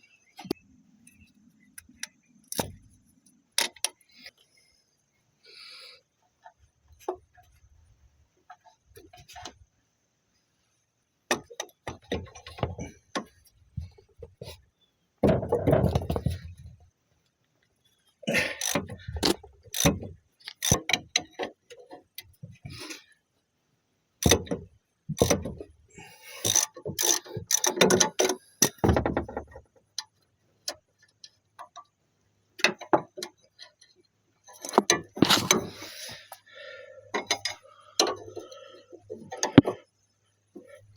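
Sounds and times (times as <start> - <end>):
ratchet clicks: 18.6 - 21.2, 26.4 - 28.8.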